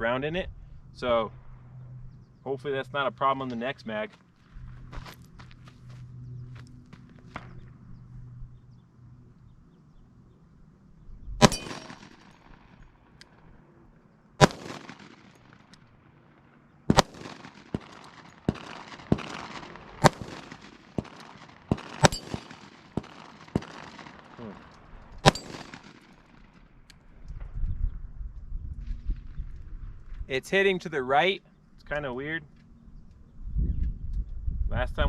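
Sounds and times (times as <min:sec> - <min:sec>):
faint gunshot cracks: 0:11.4 - 0:12.3, 0:14.4 - 0:15.4, 0:16.9 - 0:24.5, 0:25.2 - 0:26.2
pistol shots: 0:11.4 - 0:12.9, 0:14.4 - 0:15.9, 0:16.9 - 0:26.6.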